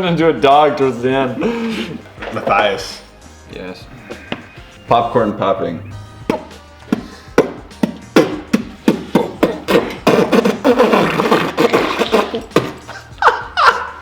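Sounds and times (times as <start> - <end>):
person making popping mouth sounds: 6.2 - 13.0.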